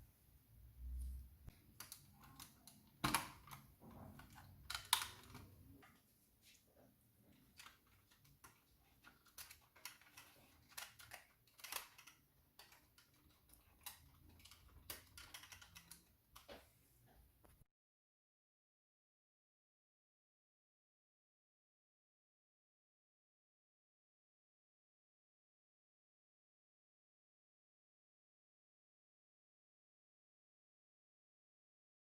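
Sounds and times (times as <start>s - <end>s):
small hard parts clicking: 1.6s - 5.5s, 7.5s - 16.6s.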